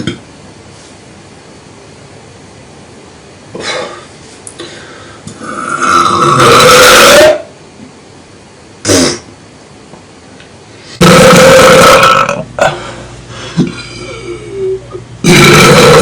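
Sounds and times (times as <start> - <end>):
man burping: 5.4 - 7.5, 11.0 - 12.9, 13.6 - 16.0.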